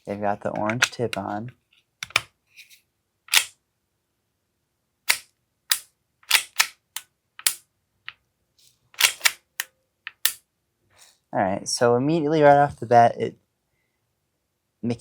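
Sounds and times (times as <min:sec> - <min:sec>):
toy pistol clicks: 0:03.3 - 0:03.5, 0:05.1 - 0:07.6, 0:09.0 - 0:10.4.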